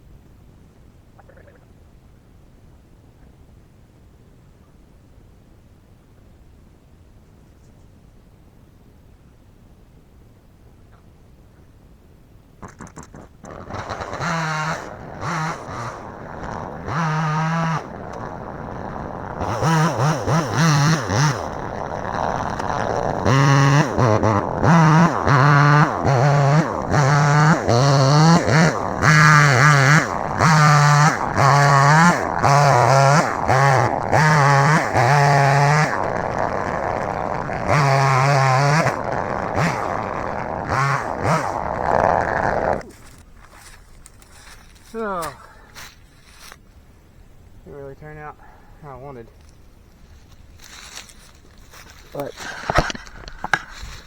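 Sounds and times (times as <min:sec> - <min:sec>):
chainsaw cutting wood: 0:12.6 - 0:46.6, 0:48.9 - 0:54.0.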